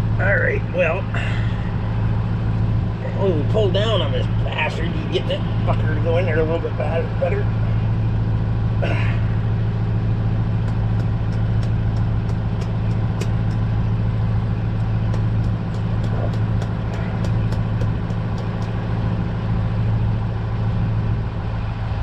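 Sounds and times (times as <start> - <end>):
engine idling hum: 0.0 - 22.0
fast light high ticking: 10.6 - 19.0.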